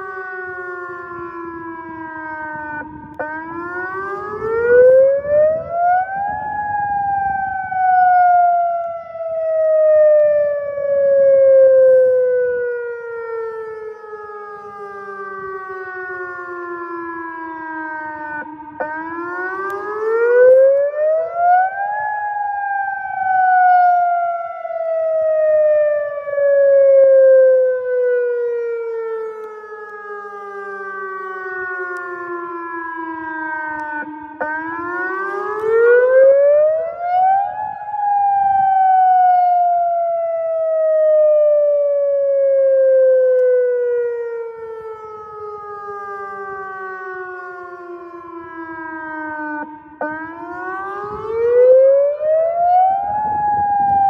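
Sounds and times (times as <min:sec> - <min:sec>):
warning siren wailing: 0:00.0 - 0:54.0.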